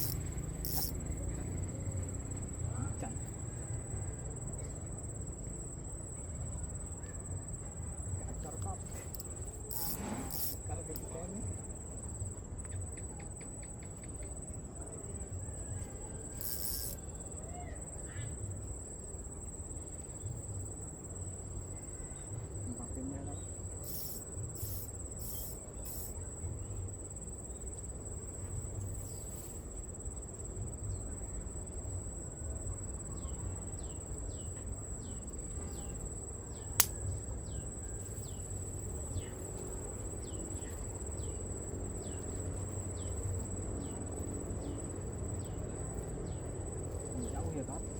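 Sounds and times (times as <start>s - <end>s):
sharp click: 0.0s - 1.0s, 16.4s - 17.0s, 36.8s - 37.0s
insects calling high-pitched tone: 0.0s - 47.9s.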